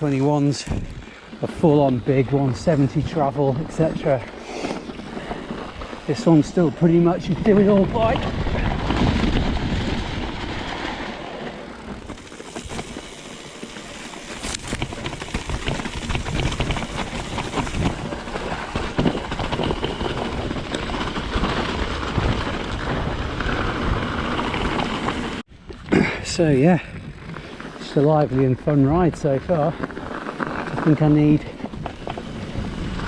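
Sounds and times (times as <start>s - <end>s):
tyre and wind rush: 0.0s - 33.0s
bike knocks and rattles: 3.3s - 25.4s.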